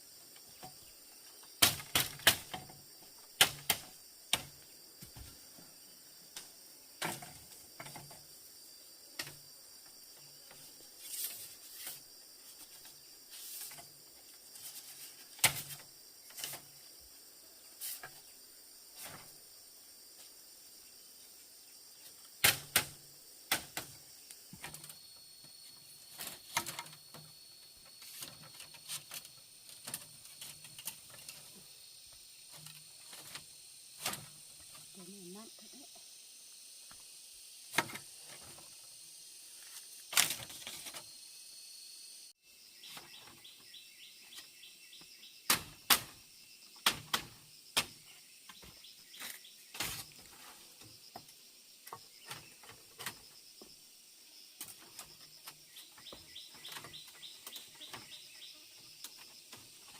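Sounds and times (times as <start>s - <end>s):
insects chirring: 0.0s - 59.9s.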